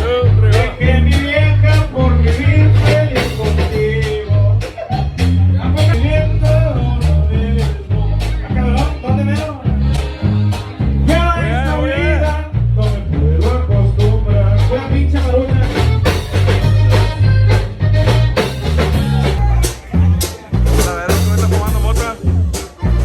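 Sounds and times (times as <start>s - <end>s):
person singing: 0.0s - 16.2s
party music with heavy bass: 0.0s - 23.0s.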